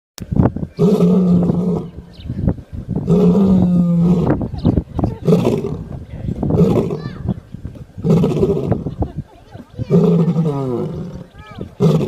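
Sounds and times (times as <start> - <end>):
lion snoring: 9.9 - 12.0.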